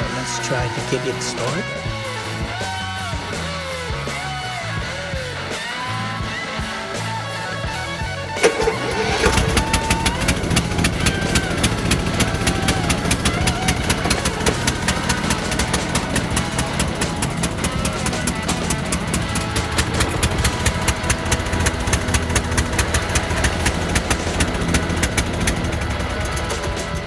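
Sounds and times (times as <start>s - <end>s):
lawn tractor engine running: 7.7s - 27.0s.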